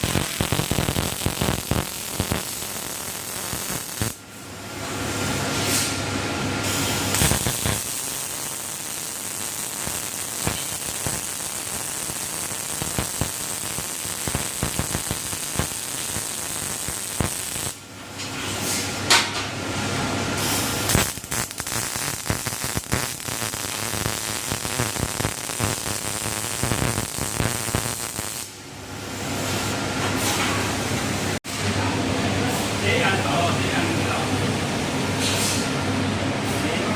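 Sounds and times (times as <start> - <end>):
welding arc crackling hiss: 0.0 - 4.3, 6.6 - 17.9, 20.3 - 28.6.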